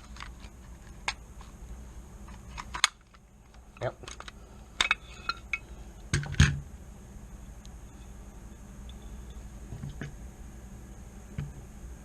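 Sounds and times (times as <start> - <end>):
metal gun parts clicking: 2.3 - 5.6.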